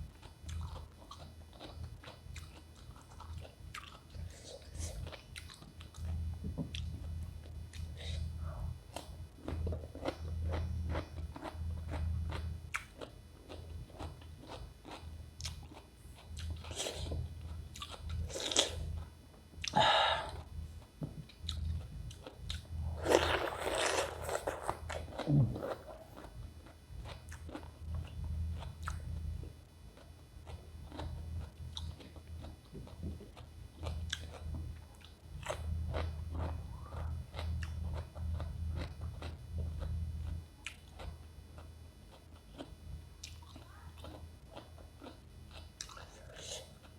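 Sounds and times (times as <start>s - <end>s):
low hum: 4.1s - 42.1s
cucumber crunching while chewed: 9.0s - 19.0s, 21.2s - 29.0s, 30.0s - 46.9s.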